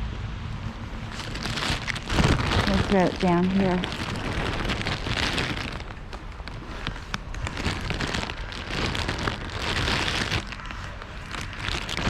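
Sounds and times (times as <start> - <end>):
raindrops hitting near microphone: 0.0 - 12.0.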